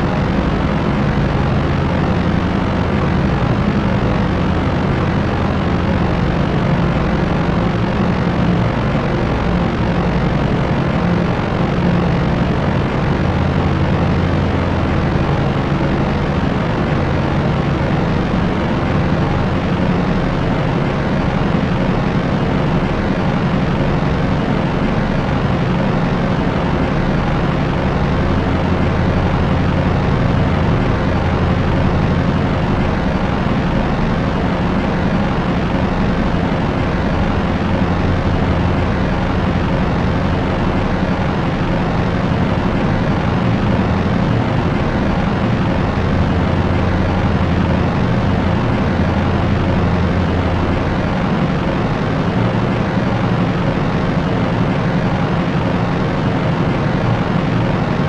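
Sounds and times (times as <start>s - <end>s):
propeller airplane engines droning: 0.0s - 58.0s.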